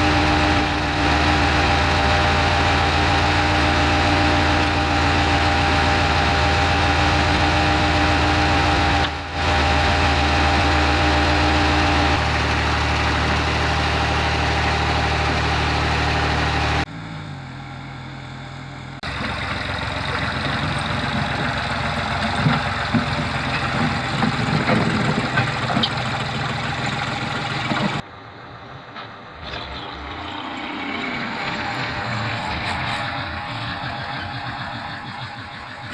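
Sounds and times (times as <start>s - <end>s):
engine running: 0.0s - 35.9s.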